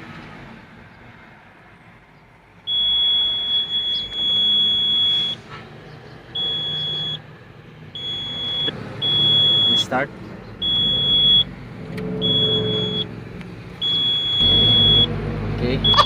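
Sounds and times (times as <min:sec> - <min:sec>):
high-pitched warning buzzer: 0:02.7 - 0:05.4, 0:08.0 - 0:09.8, 0:10.6 - 0:11.5, 0:12.2 - 0:13.1, 0:13.8 - 0:15.1.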